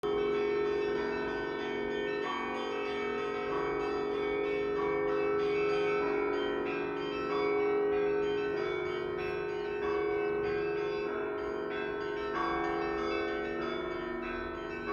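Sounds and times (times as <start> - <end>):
church bells ringing: 0.0 - 14.9.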